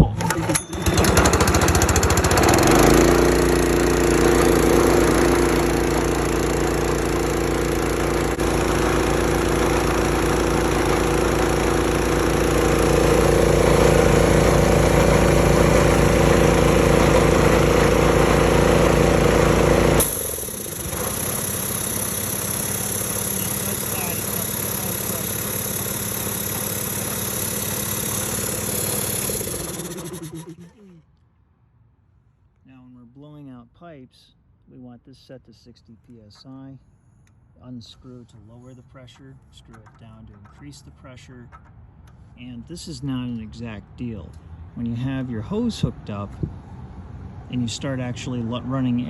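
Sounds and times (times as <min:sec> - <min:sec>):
gas engine pull-started: 0:00.0 - 0:30.9
air compressor engine running: 0:00.0 - 0:31.0.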